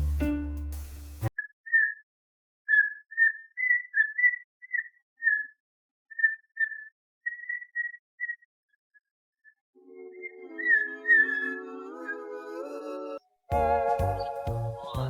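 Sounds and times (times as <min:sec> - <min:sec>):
person whistling a simple tune: 0:13.5 - 0:15.0.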